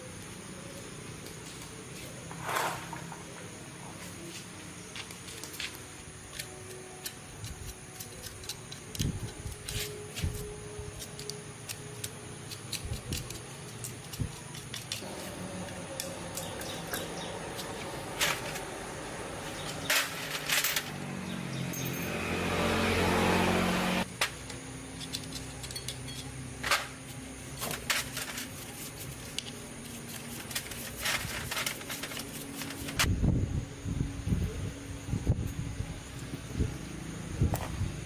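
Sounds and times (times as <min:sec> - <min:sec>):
tools and metal parts clicking: 0:05.4 - 0:15.1, 0:19.5 - 0:21.0, 0:24.2 - 0:27.0, 0:27.6 - 0:33.1.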